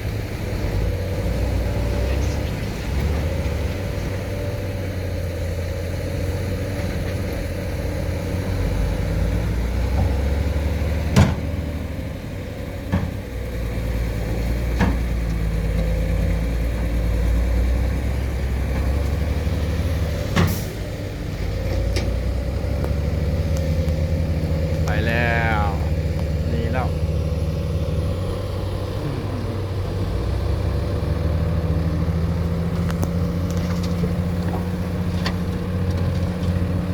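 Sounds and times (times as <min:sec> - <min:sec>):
excavator diesel engine running: 0:00.0 - 0:36.9
constant whine: 0:20.2 - 0:36.9.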